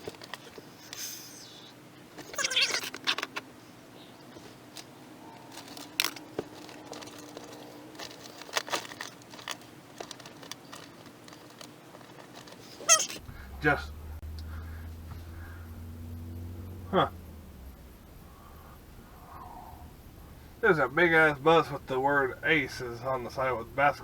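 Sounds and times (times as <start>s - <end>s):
wire crinkling and rattling: 0.0s - 0.8s, 4.4s - 15.7s.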